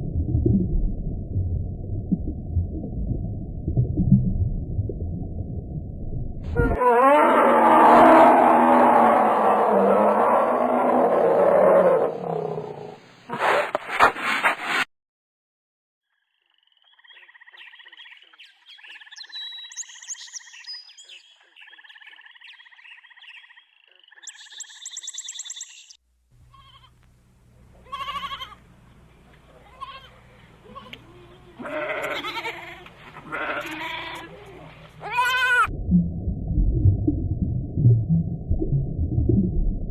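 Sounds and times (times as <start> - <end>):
low steady hum: 0.0 - 6.8, 26.0 - 39.9.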